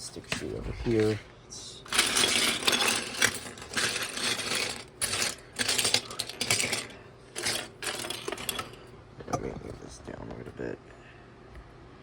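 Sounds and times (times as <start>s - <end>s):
plastic bricks clattering on table: 1.9s - 8.8s.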